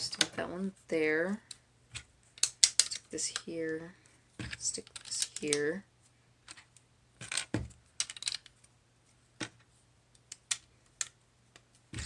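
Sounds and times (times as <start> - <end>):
plastic lego pieces clicking: 2.4 - 3.5, 4.5 - 5.6, 6.4 - 8.7, 10.1 - 11.7.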